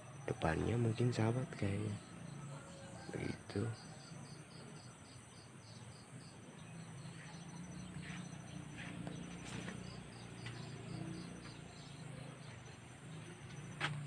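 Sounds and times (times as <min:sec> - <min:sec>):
insects chirping: 0:00.0 - 0:14.0.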